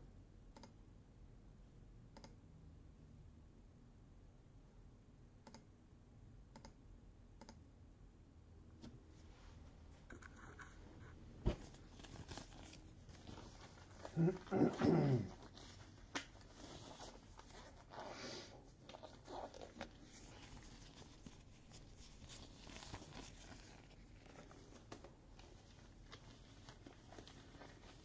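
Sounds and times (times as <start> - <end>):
faint clicks: 6.5 - 6.8
soft rustles: 8.8 - 28.0.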